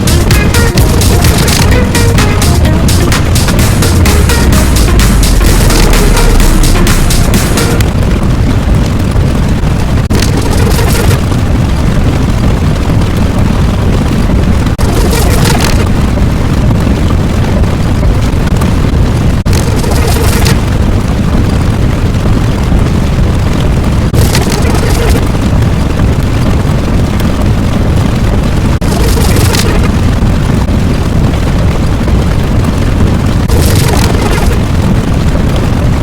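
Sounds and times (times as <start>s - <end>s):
deep rumbling: 0.0s - 36.0s.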